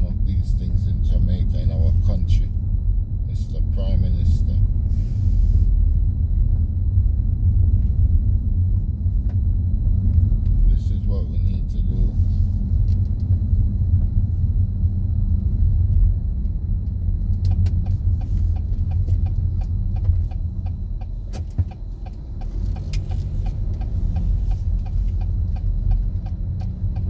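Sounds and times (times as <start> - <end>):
car driving rumble: 0.0 - 27.0
light ticking: 16.8 - 27.0.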